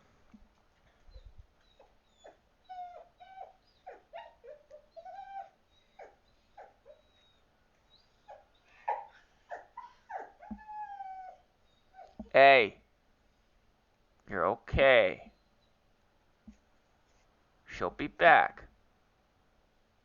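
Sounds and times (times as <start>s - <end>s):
dog whining: 1.0s - 12.3s.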